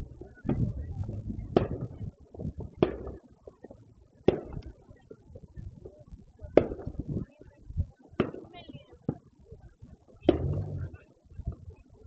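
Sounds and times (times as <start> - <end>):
fireworks bangs with echo: 1.4 - 2.0, 4.2 - 4.6, 6.5 - 7.0, 8.2 - 9.3.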